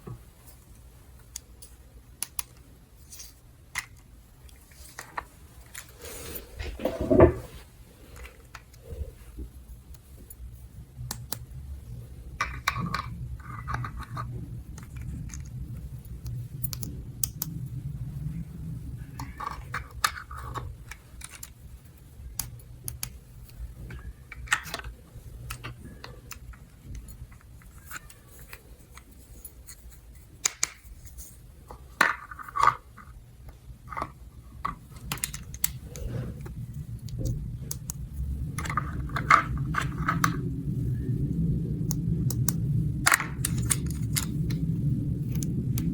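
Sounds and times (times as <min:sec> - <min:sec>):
low steady hum: 0:00.0 - 0:45.9
plastic toy pieces clicking: 0:12.4 - 0:17.5, 0:19.2 - 0:21.6, 0:22.3 - 0:29.1, 0:30.4 - 0:31.0, 0:33.8 - 0:36.1, 0:41.9 - 0:44.6.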